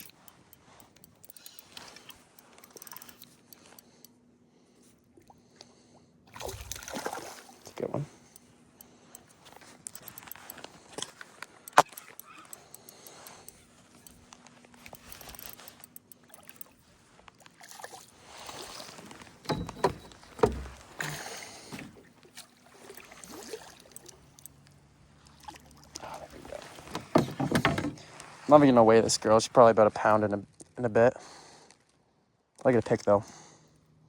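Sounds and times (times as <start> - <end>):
water splashing: 6.3 - 8.0, 17.5 - 24.4
knocks and clicks in a canoe: 18.8 - 22.1, 26.6 - 28.3.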